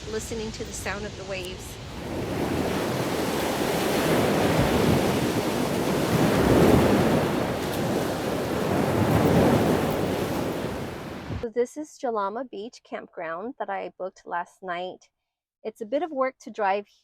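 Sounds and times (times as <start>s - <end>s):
surf breaking on beach: 0.0s - 11.4s
wind buffeting microphone: 0.0s - 11.4s.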